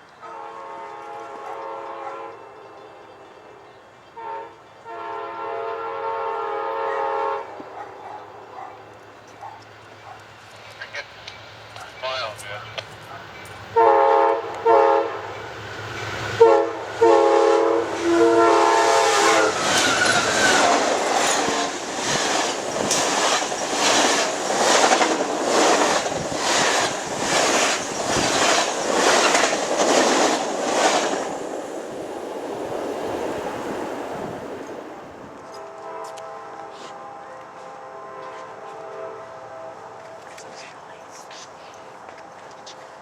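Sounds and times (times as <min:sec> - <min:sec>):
locomotive air horn blasts: 0:00.2 - 0:03.3, 0:04.2 - 0:07.6, 0:13.8 - 0:15.2, 0:16.4 - 0:21.8, 0:35.5 - 0:40.3
train wheels clacking on rails: 0:08.9 - 0:13.8, 0:17.8 - 0:32.2.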